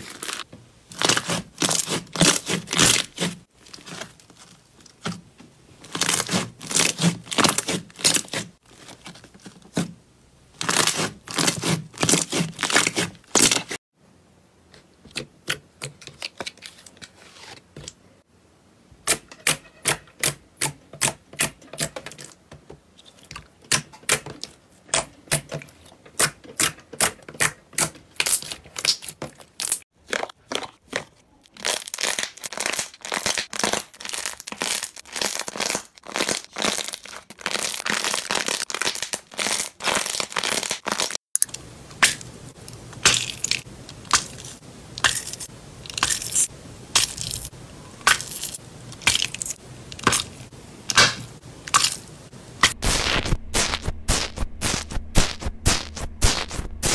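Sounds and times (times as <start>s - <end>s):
slime popping and crackling: 5.8s - 8.4s, 27.8s - 42.3s, 43.0s - 56.9s.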